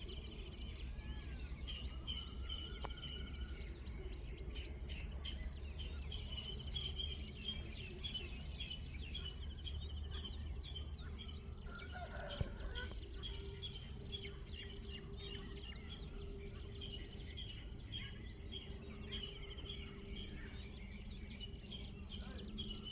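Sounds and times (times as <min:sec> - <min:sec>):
birds chirping: 0:00.0 - 0:22.9
high insect drone: 0:00.0 - 0:22.9.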